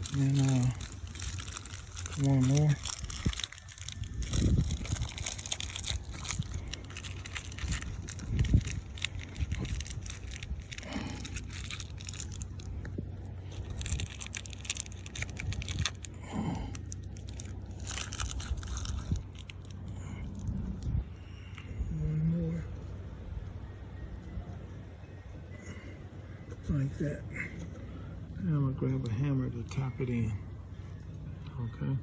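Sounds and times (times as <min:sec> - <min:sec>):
plastic rustling and crinkling: 0:00.0 - 0:20.9.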